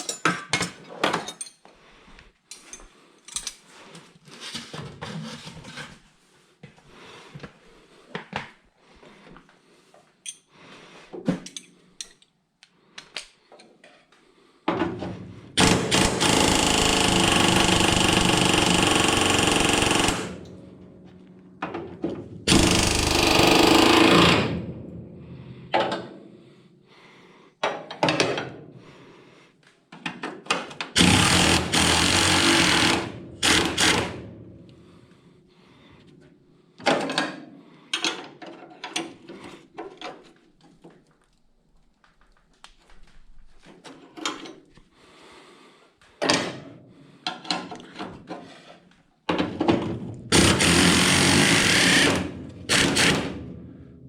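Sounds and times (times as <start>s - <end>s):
metal clinks and knocks: 0.0s - 1.7s, 2.5s - 3.7s
power tool running: 15.6s - 20.4s, 22.5s - 24.5s, 31.0s - 34.2s, 50.3s - 53.4s.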